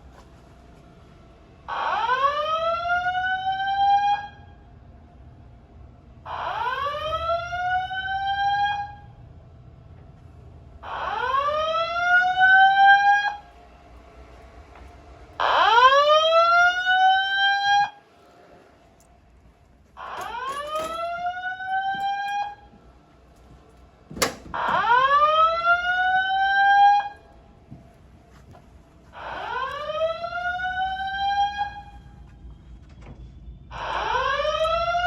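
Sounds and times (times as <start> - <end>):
fire alarm whoop tone: 1.7 - 4.6, 6.3 - 9.2, 10.8 - 13.4, 15.4 - 18.0, 20.0 - 22.8, 24.6 - 27.3, 29.2 - 32.2, 33.7 - 35.0.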